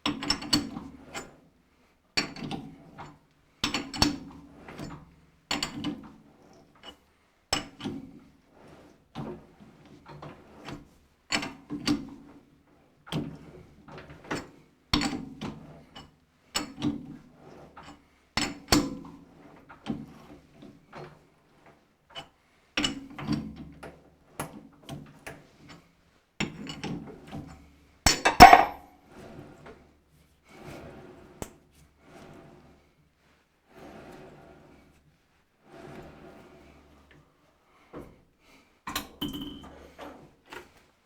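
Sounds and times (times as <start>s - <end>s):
metal clicks and knocks: 28.1s - 28.8s.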